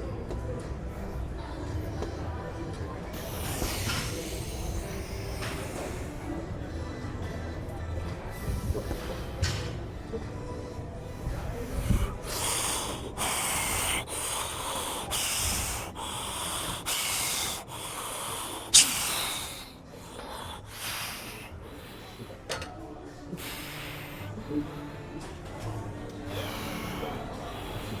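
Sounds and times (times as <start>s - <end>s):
person breathing forcefully: 11.3s - 22.4s.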